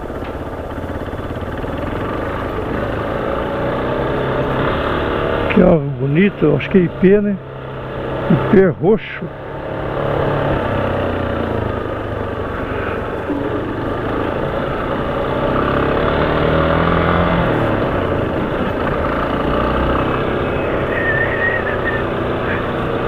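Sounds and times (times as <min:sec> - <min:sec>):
motorcycle engine running: 0:00.0 - 0:23.0
traffic and road noise: 0:00.0 - 0:23.0.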